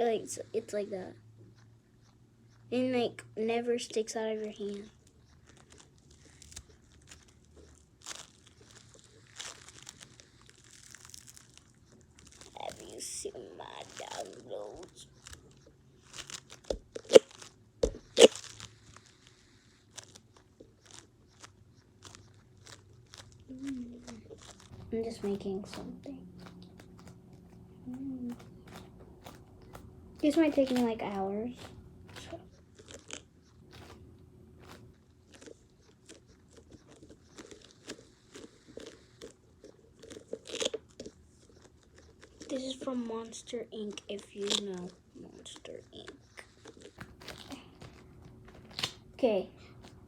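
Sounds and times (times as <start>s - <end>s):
slime toy crunching and crackling: 0.0s - 50.0s
slime toy crackling pops: 23.9s - 32.5s, 46.9s - 49.1s.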